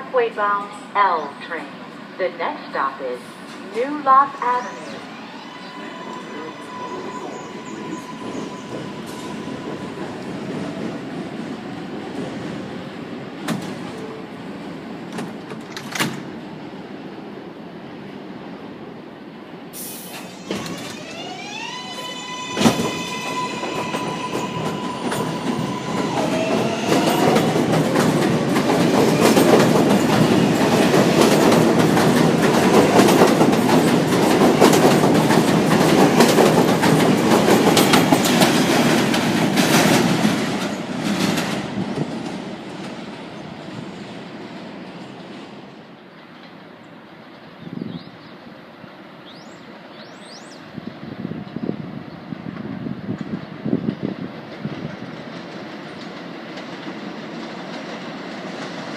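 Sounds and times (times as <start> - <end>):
train rumble and wheel clatter: 0.0 - 58.9
air hiss: 19.8 - 20.6.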